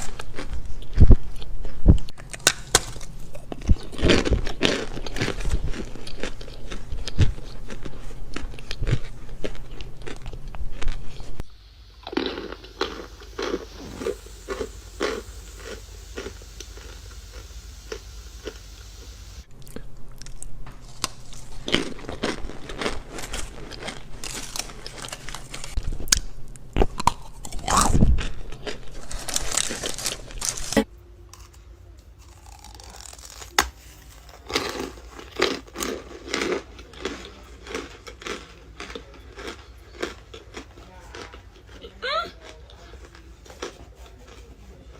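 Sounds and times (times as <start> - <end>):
crisp crunching bites: 12.0 - 31.6, 32.2 - 41.4.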